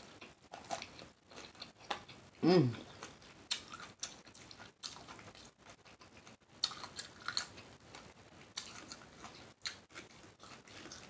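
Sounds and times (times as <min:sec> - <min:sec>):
chewing with wet mouth smacks: 0:02.8 - 0:11.0.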